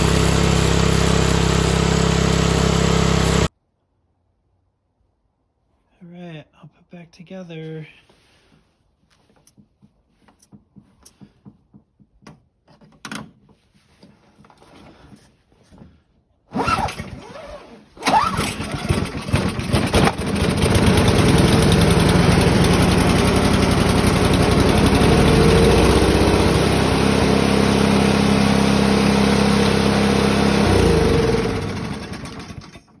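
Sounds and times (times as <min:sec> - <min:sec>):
snowblower engine running: 0:00.0 - 0:03.5, 0:18.0 - 0:33.0.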